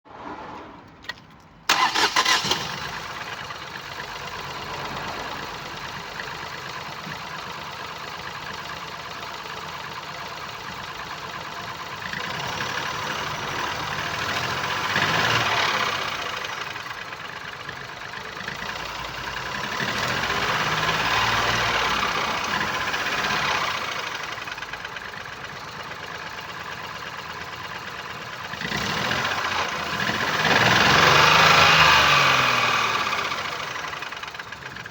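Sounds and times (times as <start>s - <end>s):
car engine starting and revving: 1.7s - 7.5s, 11.7s - 24.8s, 28.4s - 34.9s.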